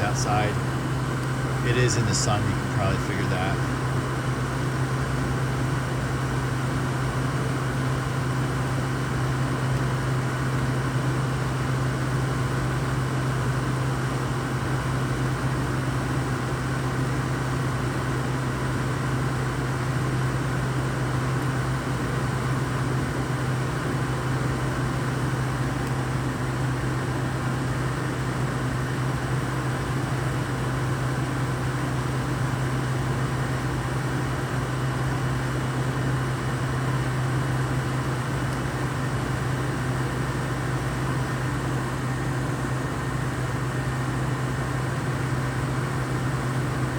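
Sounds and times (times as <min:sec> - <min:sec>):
air conditioner hum and fan: 0:00.0 - 0:46.9.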